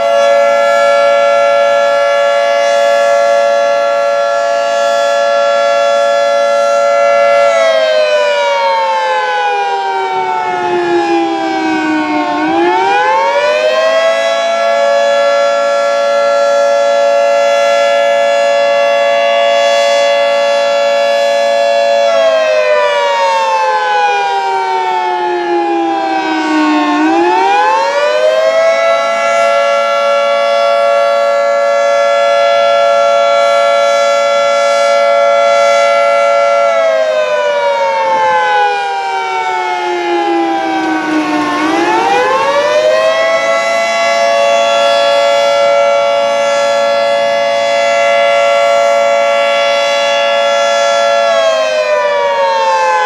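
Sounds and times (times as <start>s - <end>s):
fire siren: 0.0s - 53.0s.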